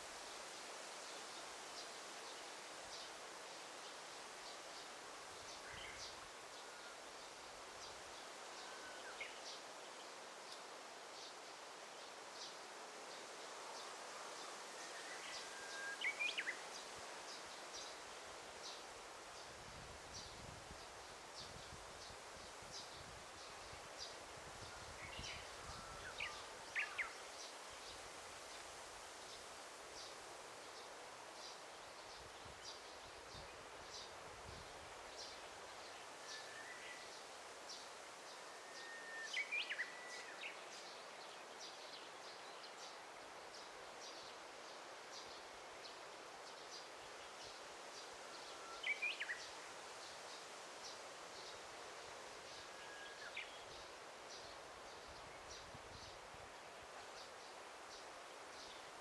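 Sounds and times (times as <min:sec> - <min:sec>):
soft hiss: 0:00.0 - 0:59.0.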